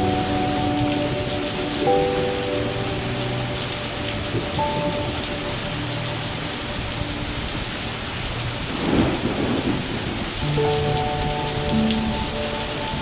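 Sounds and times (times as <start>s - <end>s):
heavy rain falling: 0.0s - 13.0s
thunder rumble: 0.0s - 13.0s.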